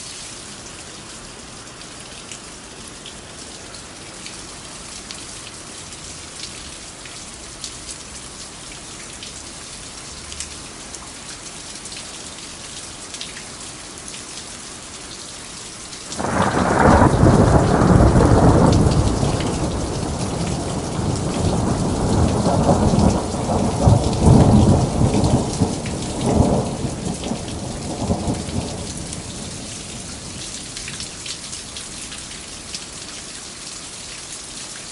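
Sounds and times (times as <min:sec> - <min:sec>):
steady rain falling: 0:00.0 - 0:34.9
thunder rumbling: 0:16.2 - 0:31.0.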